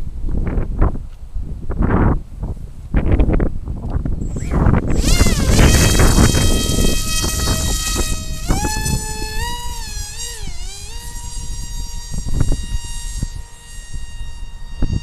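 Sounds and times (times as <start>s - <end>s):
wind rumbling on microphone: 0.0s - 15.0s
model plane motor whining: 4.2s - 15.0s.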